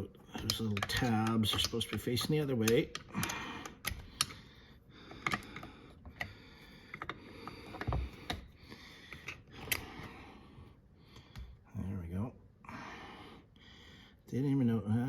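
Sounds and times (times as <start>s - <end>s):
small metal clicks and taps: 0.3s - 4.4s.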